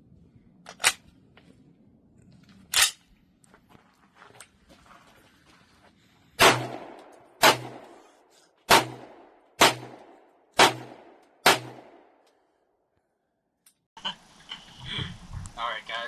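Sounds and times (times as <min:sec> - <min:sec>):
pistol gunshots: 0:06.4 - 0:08.1, 0:08.7 - 0:12.2.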